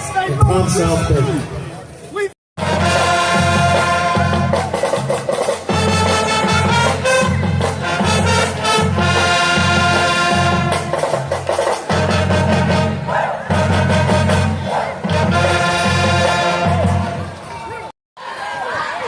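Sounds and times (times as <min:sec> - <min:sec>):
upbeat brass music: 0:02.6 - 0:17.4.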